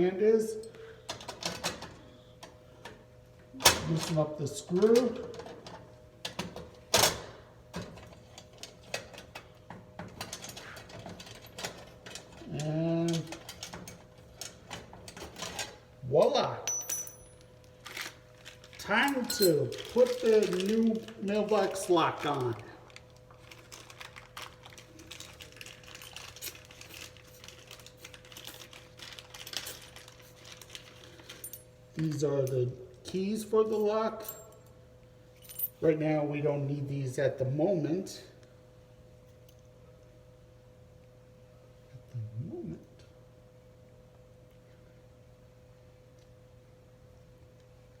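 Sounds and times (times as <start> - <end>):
steady low hum: 0.0 - 48.0
man speaking: 16.0 - 16.7, 18.8 - 22.8, 42.0 - 42.9
lock and keys clicking: 16.7 - 17.4.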